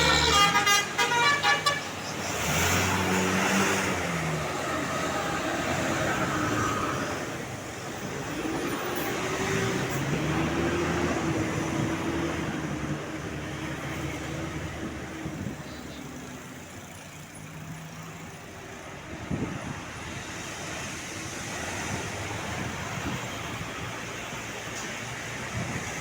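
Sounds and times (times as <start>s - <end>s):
bus engine droning: 0.0s - 26.0s
road noise: 0.0s - 26.0s
vehicle engine: 0.0s - 26.0s.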